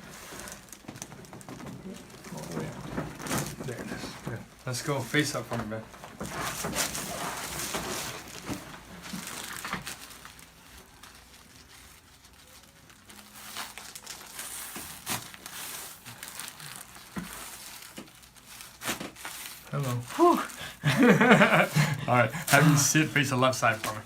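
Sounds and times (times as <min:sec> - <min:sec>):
rustling and crinkling on table: 0:00.0 - 0:24.0.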